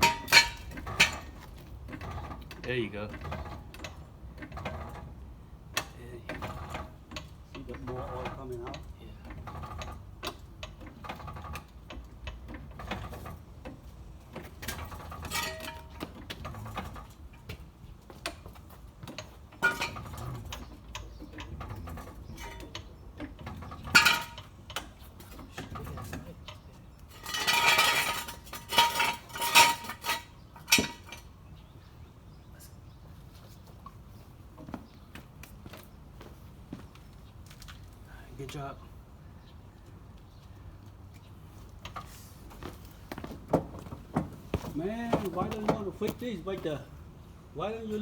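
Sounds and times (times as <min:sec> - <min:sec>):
metal tools clinking: 0:00.0 - 0:01.4, 0:14.6 - 0:17.4, 0:19.1 - 0:31.3.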